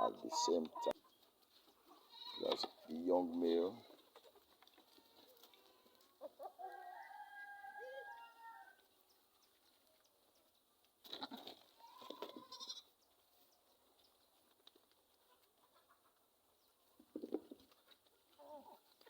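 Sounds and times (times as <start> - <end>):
goats bleating faintly: 1.9 - 2.8, 11.1 - 12.9.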